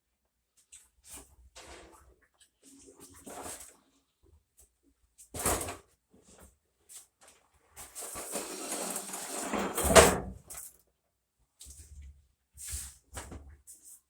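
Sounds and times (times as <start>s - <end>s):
scraping or sliding: 8.0s - 10.0s.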